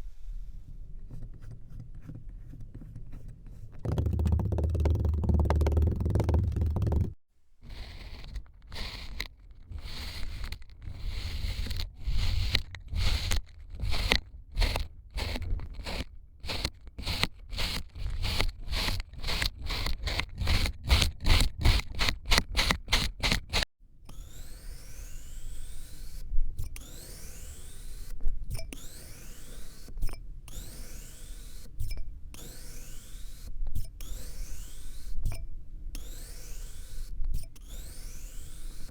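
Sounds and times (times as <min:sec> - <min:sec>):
sand being scraped: 0:07.6 - 0:23.6.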